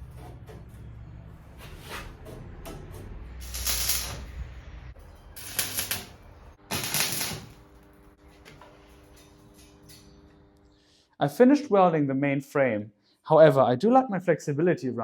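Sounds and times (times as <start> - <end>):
welding crackling hiss: 3.4 - 4.3, 5.4 - 6.1, 6.7 - 7.9.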